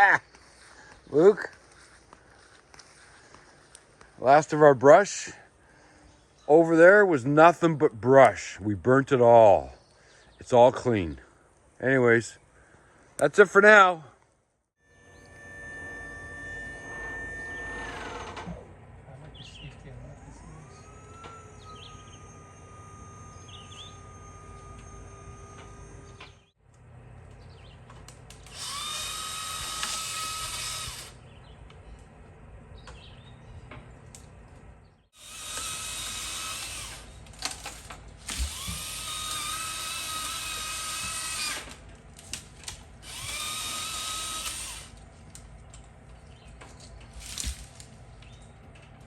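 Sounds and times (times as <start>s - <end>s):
chainsaw revving: 28.4s - 31.2s, 35.2s - 37.2s, 38.3s - 41.8s, 43.0s - 45.0s.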